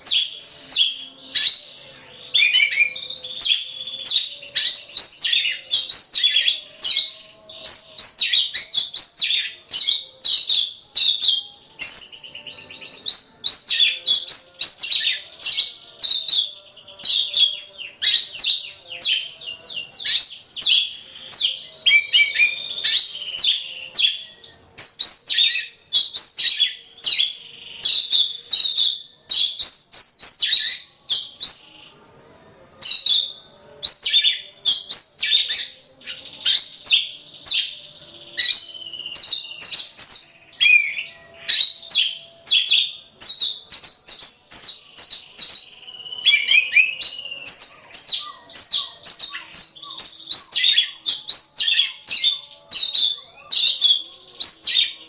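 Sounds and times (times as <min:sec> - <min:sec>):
bird singing rapid chirps: 0:00.0 - 0:55.0.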